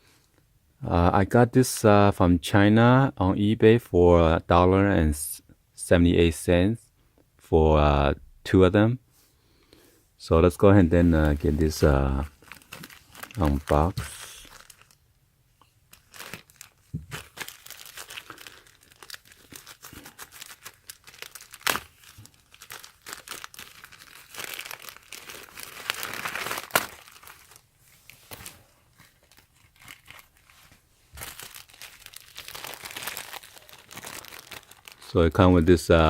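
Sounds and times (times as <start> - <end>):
packaging crinkling and tearing: 11.0 - 15.0, 15.9 - 35.4.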